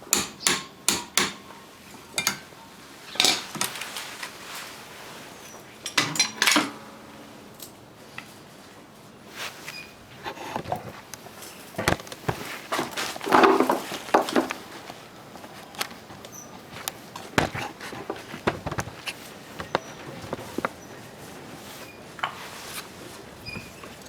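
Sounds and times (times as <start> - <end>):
rustling: 3.5 - 5.7, 8.0 - 24.0.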